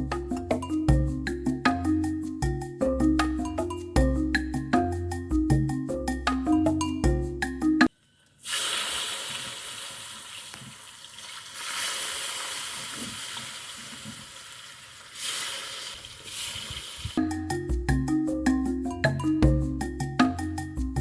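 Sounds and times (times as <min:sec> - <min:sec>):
potatoes sizzling in oil: 0:08.4 - 0:17.2.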